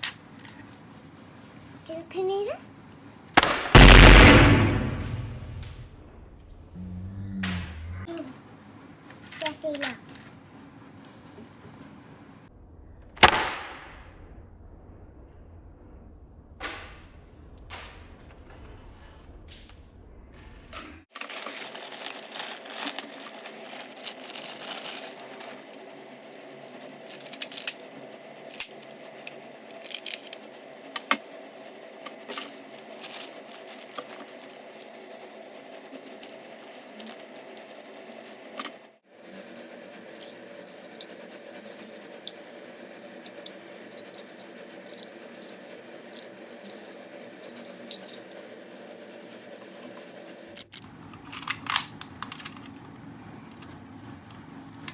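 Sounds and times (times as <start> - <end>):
steady hum: 3.8 - 8.1, 21.1 - 54.9
plastic parts clicking and rattling: 21.1 - 31.4, 32.0 - 38.8, 40.1 - 42.5, 43.2 - 48.4, 50.6 - 52.8.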